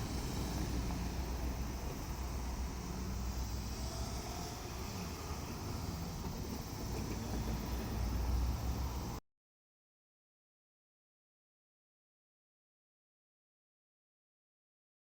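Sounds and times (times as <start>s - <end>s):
low vehicle rumble: 0.0s - 9.2s
outdoor hiss: 0.0s - 9.2s.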